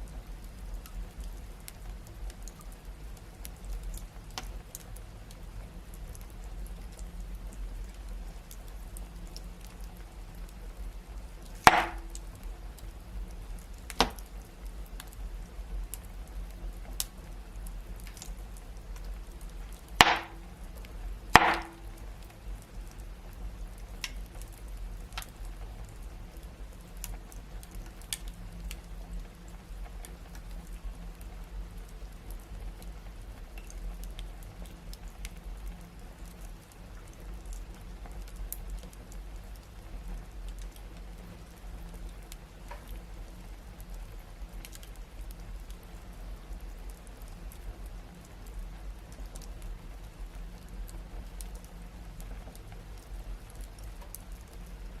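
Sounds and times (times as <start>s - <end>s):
wood fire crackling: 0.1s - 55.0s
loud pops of burning logs: 11.4s - 12.5s, 13.7s - 14.5s, 19.7s - 22.4s.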